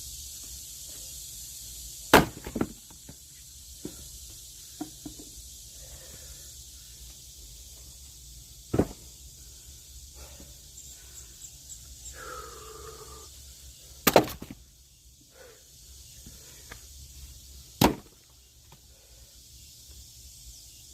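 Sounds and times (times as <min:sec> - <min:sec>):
axe splitting logs: 0:02.1 - 0:03.0, 0:08.7 - 0:09.0, 0:14.0 - 0:14.6, 0:17.8 - 0:18.2.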